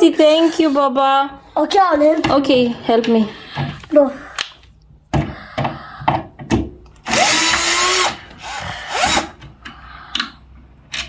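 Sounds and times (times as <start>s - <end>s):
power drill motor whine: 7.0s - 9.3s.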